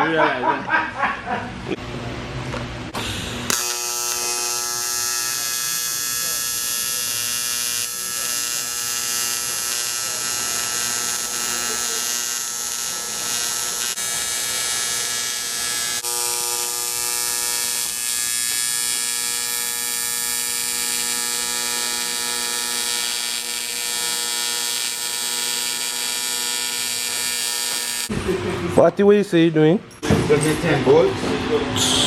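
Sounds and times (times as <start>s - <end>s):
electrical hum and buzz: 1.6s - 28.7s.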